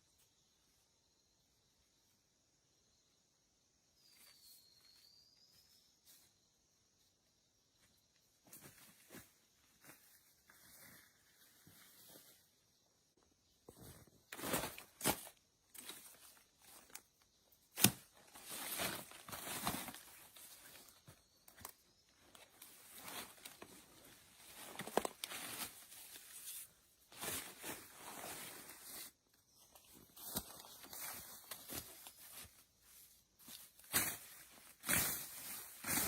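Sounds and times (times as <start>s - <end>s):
rustling and crunching: 17.8s - 21.7s, 22.3s - 29.1s.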